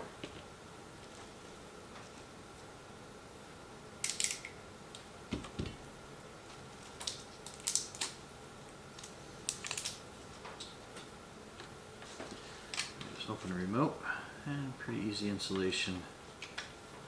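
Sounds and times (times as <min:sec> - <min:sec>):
plastic clicks and crinkles: 0:04.0 - 0:05.6, 0:06.8 - 0:08.2, 0:08.9 - 0:13.0.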